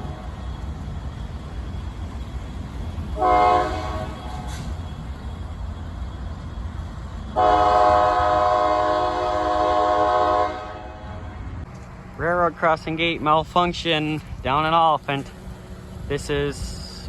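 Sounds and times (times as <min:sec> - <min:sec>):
low rumble of passing train: 0:00.0 - 0:17.0
locomotive air horn blasts: 0:03.2 - 0:04.7, 0:07.4 - 0:11.4.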